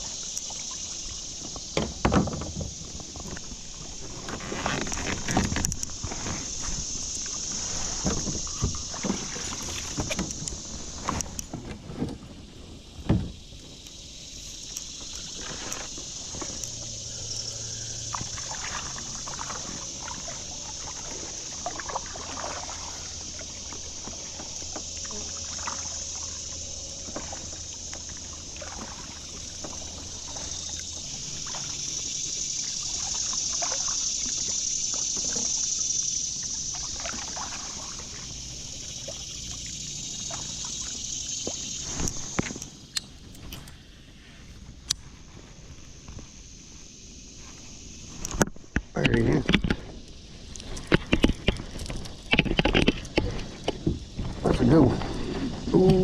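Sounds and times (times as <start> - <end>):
creek current rushing: 14.6 - 42.4.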